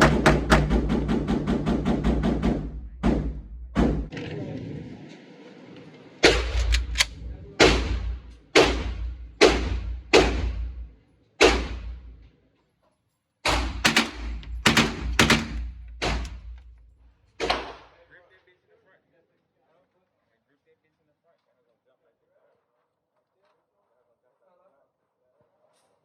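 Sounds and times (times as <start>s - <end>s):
gunshots with ringing tail: 6.2s - 12.1s, 13.5s - 16.6s.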